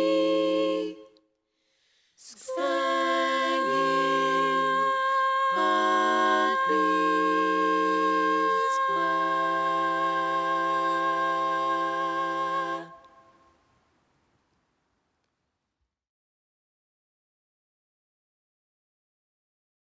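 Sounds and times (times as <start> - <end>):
voices humming held chords: 2.5 - 12.9.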